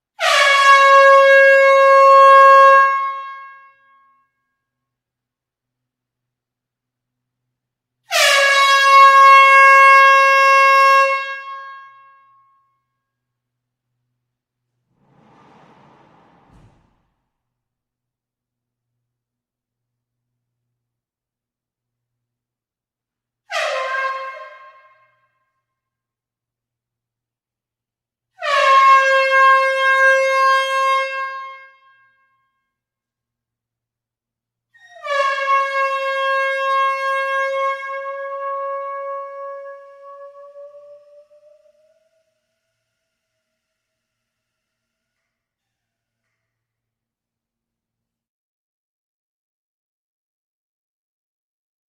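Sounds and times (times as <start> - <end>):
air horn blast: 0.2 - 3.7, 8.1 - 12.2, 14.9 - 17.2, 23.5 - 25.2, 28.4 - 31.9, 35.0 - 42.9.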